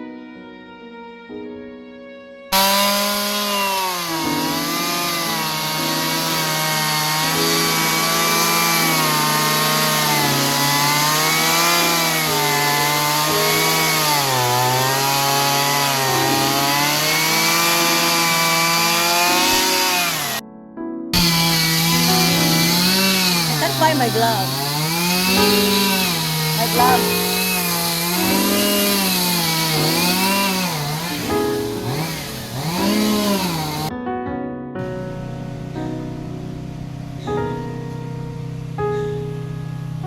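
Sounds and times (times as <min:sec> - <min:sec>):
chainsaw cutting wood: 0:02.5 - 0:20.4, 0:21.2 - 0:33.9.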